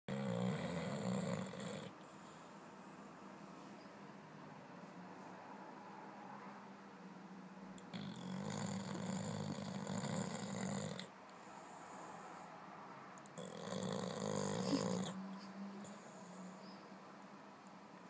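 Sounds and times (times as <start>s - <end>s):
dog snoring: 0.1s - 2.4s, 7.8s - 12.5s, 13.2s - 16.8s.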